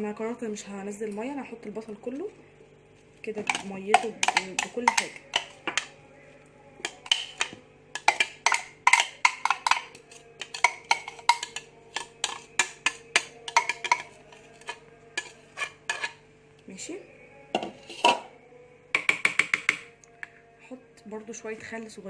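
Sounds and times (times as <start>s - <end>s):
spoon scraping a bowl: 3.4s - 6.0s, 6.8s - 16.2s, 17.6s - 18.4s.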